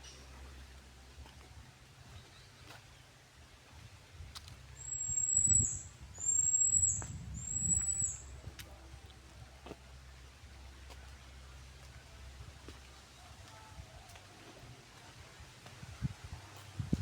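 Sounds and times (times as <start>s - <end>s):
bird whistled calls: 4.8s - 8.3s.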